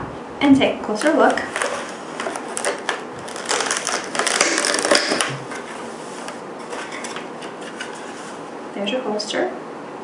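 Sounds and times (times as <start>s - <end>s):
packaging crackling: 1.0s - 8.0s.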